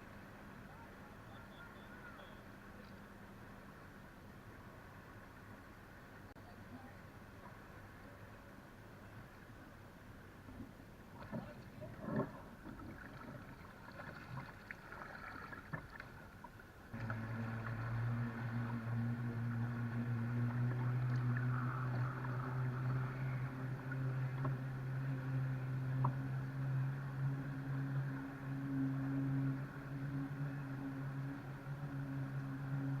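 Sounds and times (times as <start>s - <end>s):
jetski engine humming: 16.3s - 33.0s.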